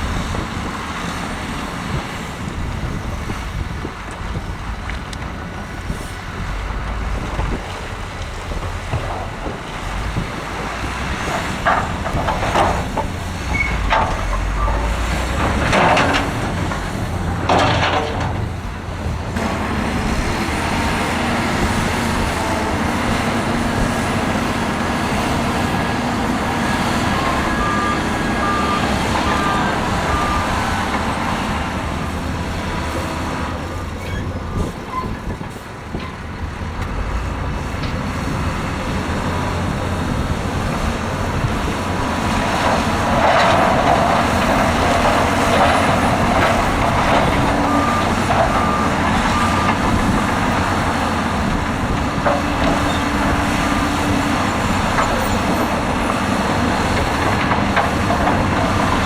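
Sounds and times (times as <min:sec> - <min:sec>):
diesel machinery rumbling: 0:00.0 - 0:59.0
reversing alarm beeping: 0:27.0 - 0:31.1.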